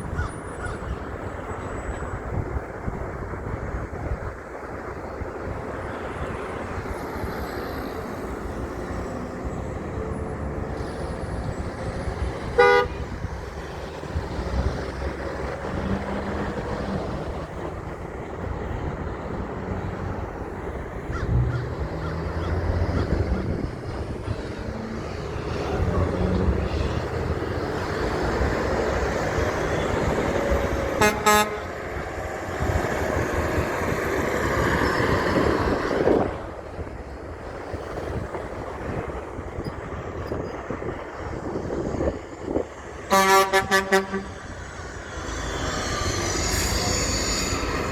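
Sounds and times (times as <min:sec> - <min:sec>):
passing truck engines and traffic: 0:00.0 - 0:47.9
truck horn blasts: 0:12.4 - 0:13.5, 0:29.6 - 0:31.9, 0:43.1 - 0:44.7.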